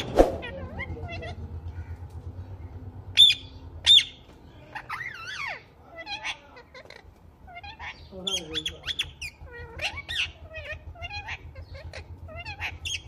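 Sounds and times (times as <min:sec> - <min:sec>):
parrot shrieking and calling: 0:00.0 - 0:02.0, 0:03.1 - 0:13.0
parrot chatter: 0:03.1 - 0:13.0.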